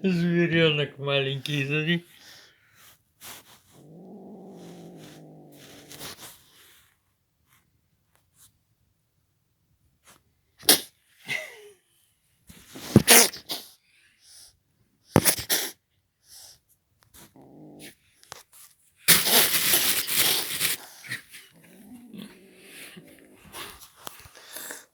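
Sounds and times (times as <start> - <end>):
animal growling low: 3.8 - 6.2, 17.4 - 18.0, 21.4 - 23.7.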